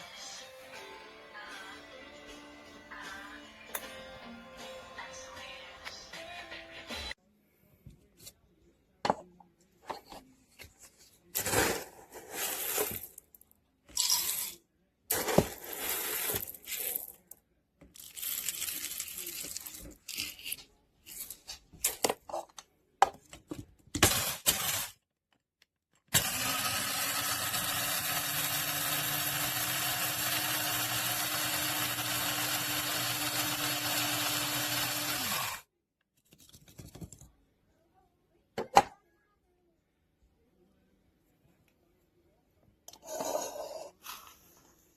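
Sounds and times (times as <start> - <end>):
coffee grinder clattering: 26.2 - 35.6
grinder motor humming: 26.2 - 35.6.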